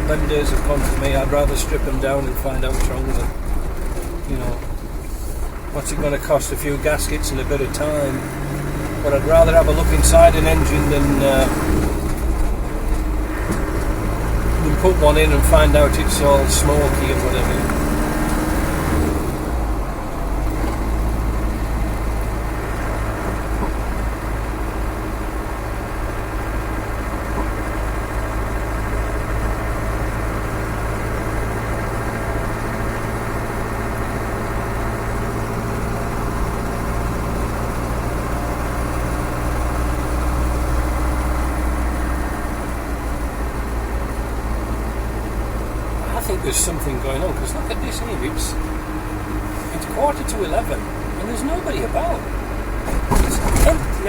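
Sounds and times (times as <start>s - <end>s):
diesel engine driving: 0.0s - 54.0s
road noise: 0.0s - 54.0s.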